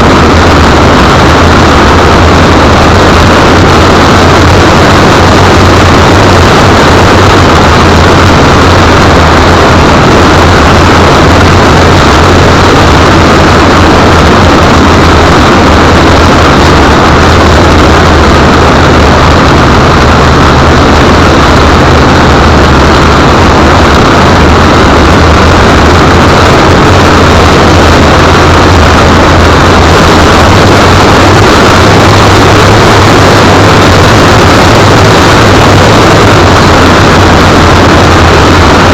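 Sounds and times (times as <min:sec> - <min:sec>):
propeller motor noise: 0:00.0 - 0:38.9
wind rush: 0:00.0 - 0:38.9.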